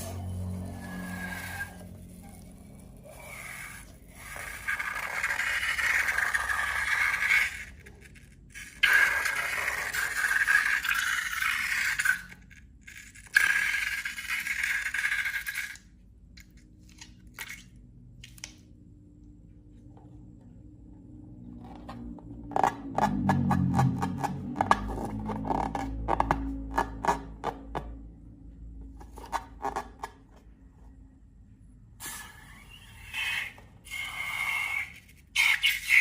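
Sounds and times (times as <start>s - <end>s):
long scraping strokes: 0.0s - 7.8s.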